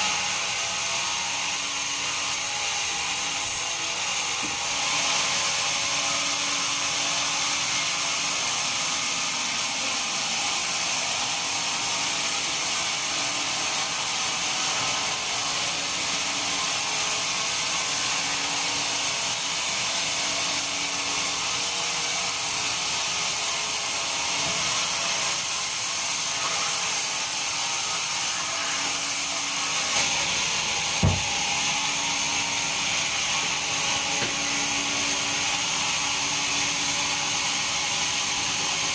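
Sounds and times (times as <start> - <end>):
bandsaw cutting wood: 0.0 - 38.9
short thud: 31.0 - 31.3.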